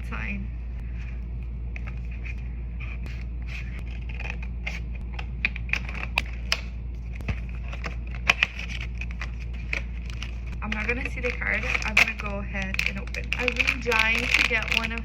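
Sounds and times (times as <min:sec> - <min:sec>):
steady background hum: 0:00.0 - 0:15.0
packaging clicks and crinkling: 0:03.8 - 0:15.0.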